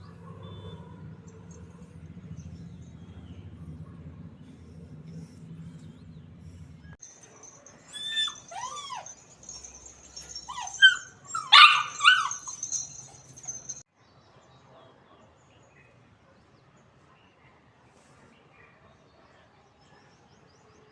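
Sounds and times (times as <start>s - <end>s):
small dog yipping and whining: 7.4s - 13.8s.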